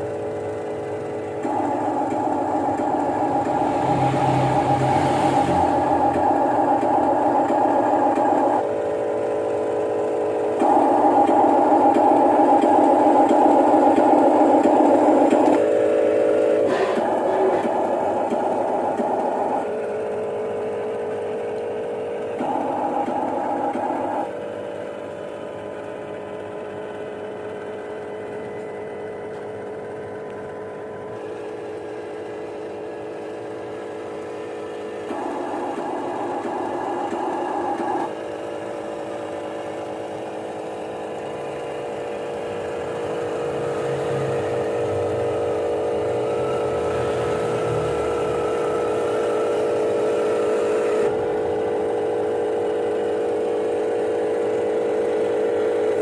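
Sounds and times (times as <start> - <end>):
electric motors whining: 0.0 - 56.0
hydraulic pump whine: 0.0 - 56.0.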